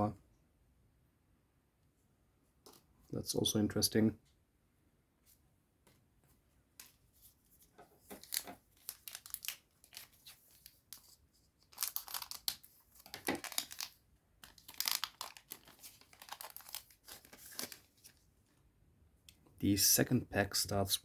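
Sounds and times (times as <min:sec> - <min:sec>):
foil pack tearing and crinkling: 0:08.2 - 0:10.8, 0:11.6 - 0:17.9.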